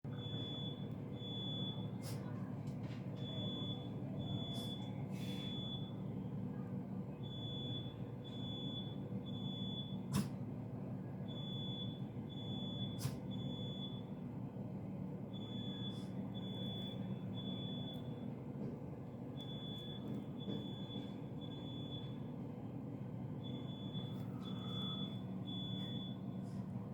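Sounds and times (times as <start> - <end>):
fire alarm beeping: 0.1 - 2.0, 3.2 - 6.4, 7.2 - 10.1, 11.2 - 14.4, 15.3 - 18.4, 19.3 - 22.4, 23.0 - 26.7.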